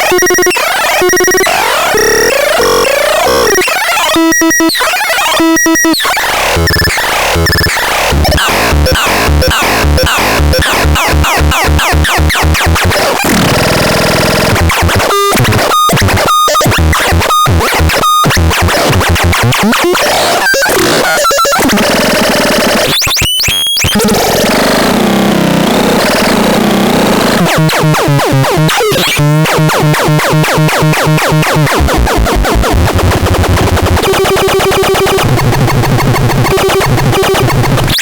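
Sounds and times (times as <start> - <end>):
harsh noisy synthesizer: 0.0 - 38.0.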